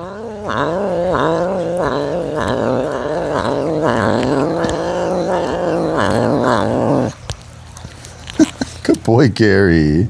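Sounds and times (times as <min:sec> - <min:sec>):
serval growling: 0:00.0 - 0:07.2.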